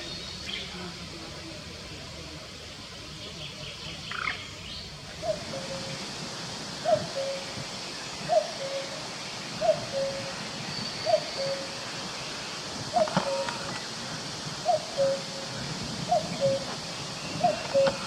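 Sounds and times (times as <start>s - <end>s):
faint forest hiss: 0.0s - 18.0s
cuckoo calling: 5.2s - 6.1s, 6.8s - 7.6s, 8.2s - 11.9s, 12.9s - 14.0s, 14.6s - 18.0s.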